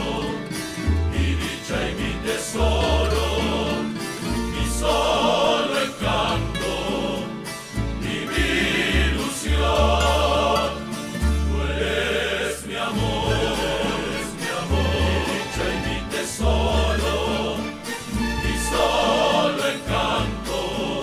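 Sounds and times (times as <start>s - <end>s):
steady bass line: 0.0s - 12.4s, 13.0s - 21.0s
several voices singing: 0.0s - 21.0s.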